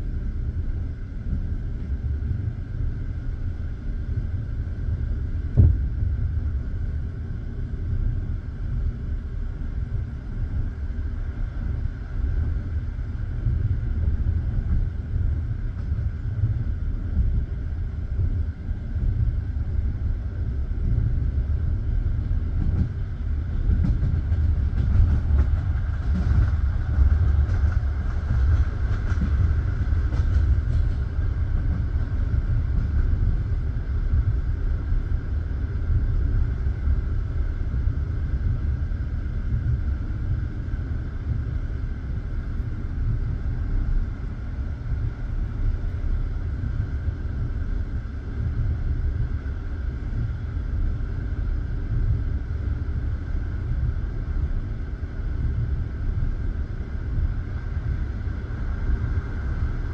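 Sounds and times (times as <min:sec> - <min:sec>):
train wheels rumbling on rail: 0:00.0 - 0:59.9.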